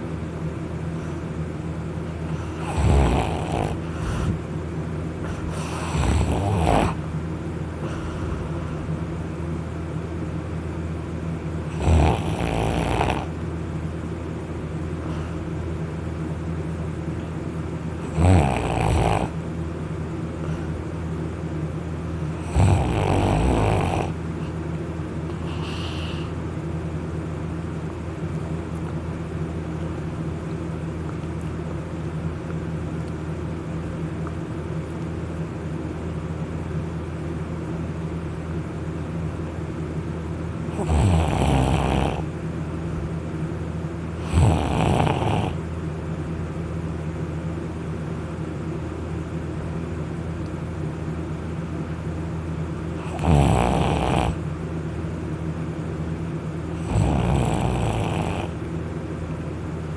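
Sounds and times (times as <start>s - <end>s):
person snoring heavily: 2.2s - 4.4s, 5.2s - 7.0s, 11.7s - 13.4s, 18.0s - 19.4s, 22.4s - 24.2s, 25.4s - 26.4s, 40.7s - 42.3s, 44.2s - 45.6s, 53.0s - 54.4s, 56.7s - 58.6s.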